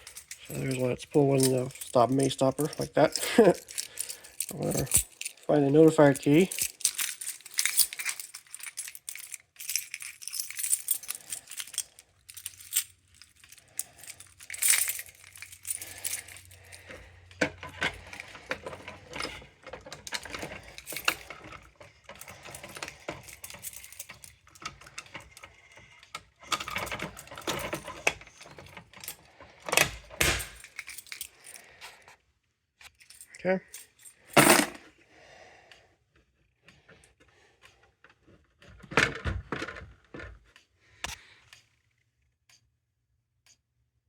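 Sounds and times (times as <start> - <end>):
metal keys jangling: 0.0 - 32.1, 32.9 - 34.9.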